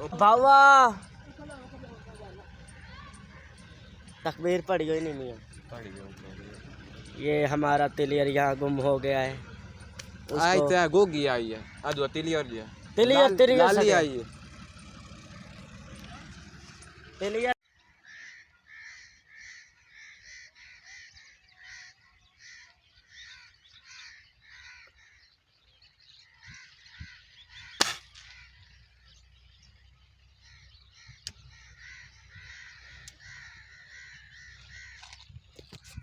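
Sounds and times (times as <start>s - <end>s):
birds calling harshly: 0.0s - 36.0s
sharp air rifle crack: 27.8s - 28.4s.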